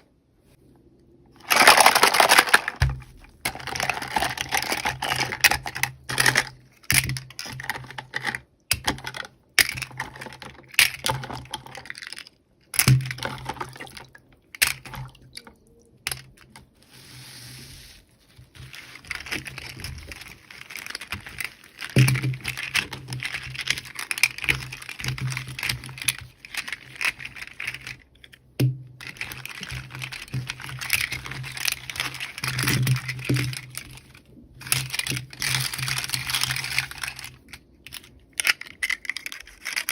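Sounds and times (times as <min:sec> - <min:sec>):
packaging crinkling and tearing: 0:01.4 - 0:02.9
plastic toys clicking and tapping: 0:01.4 - 0:16.7, 0:18.6 - 0:39.9.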